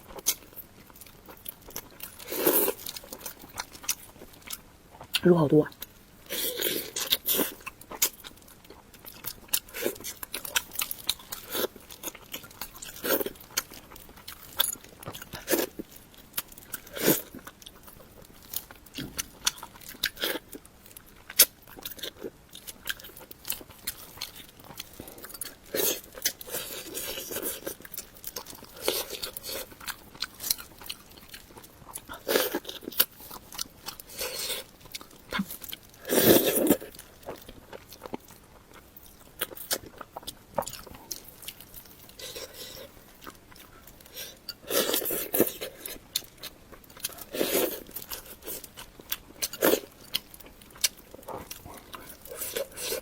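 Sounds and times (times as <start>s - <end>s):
crunching bites and chewing: 0.0s - 5.2s, 5.8s - 53.0s.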